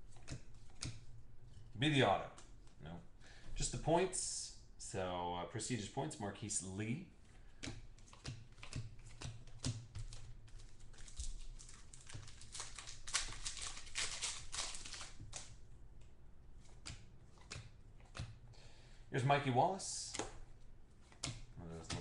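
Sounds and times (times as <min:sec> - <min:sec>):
trading cards flipped by hand: 0:07.6 - 0:18.4, 0:21.0 - 0:22.0.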